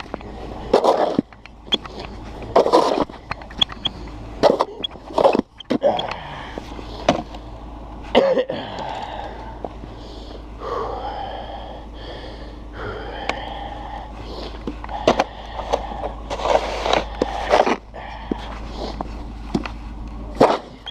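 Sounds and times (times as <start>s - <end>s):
snow shovel scraping ground: 2.5s - 3.1s, 16.3s - 17.8s
heavy wheezy breathing: 5.8s - 7.7s, 8.5s - 19.3s.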